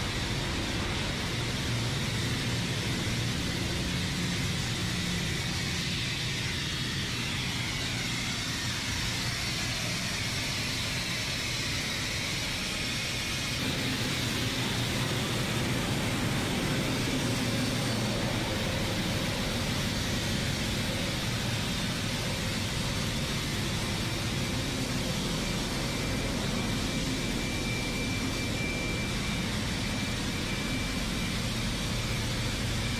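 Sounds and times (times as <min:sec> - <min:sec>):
engine room low hum: 0:00.0 - 0:32.9
machinery hiss: 0:05.6 - 0:30.8.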